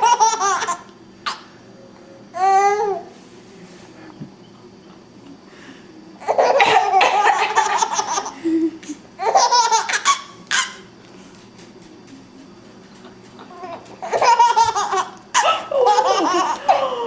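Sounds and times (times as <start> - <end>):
baby laughing: 0.0 - 1.4, 6.2 - 10.9, 13.4 - 17.0.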